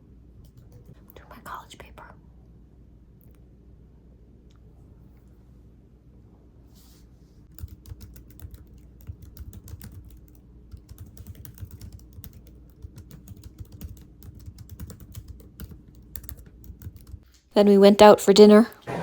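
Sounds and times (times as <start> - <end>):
typing on a computer keyboard: 0.4 - 1.0, 7.5 - 17.3.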